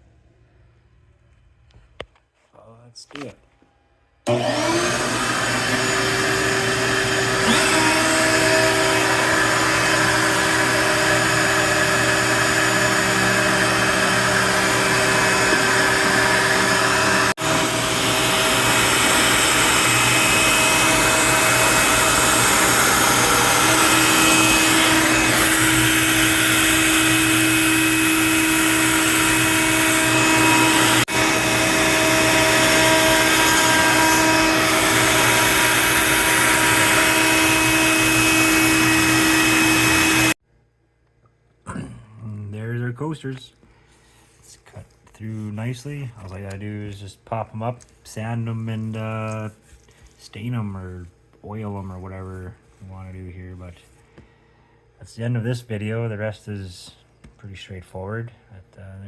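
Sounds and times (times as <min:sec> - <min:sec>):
router spindle whining: 0:04.3 - 0:40.4.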